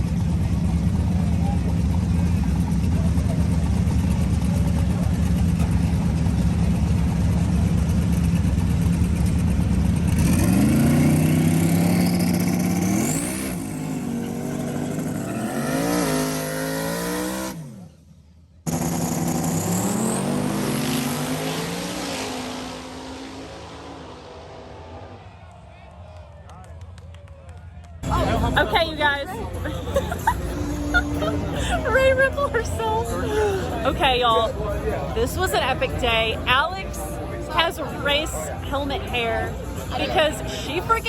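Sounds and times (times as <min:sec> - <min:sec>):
drag racing car engine accelerating: 0:00.0 - 0:25.6.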